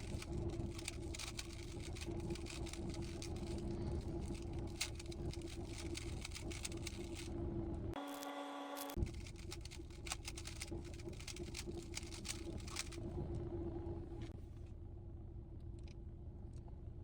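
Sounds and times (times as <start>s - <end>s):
puzzle cube plastic clicks: 0.0s - 7.3s, 9.0s - 13.0s
steady low rumble: 0.0s - 8.0s, 8.9s - 17.0s.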